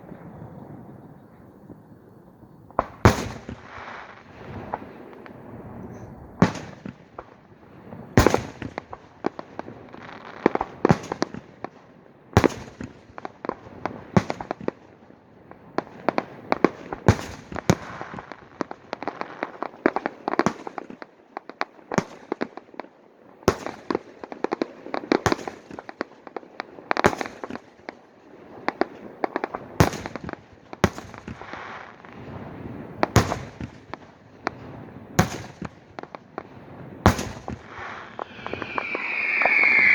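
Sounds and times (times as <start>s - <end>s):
fireworks bangs: 35.2s - 39.9s
fireworks crackling: 35.5s - 39.9s.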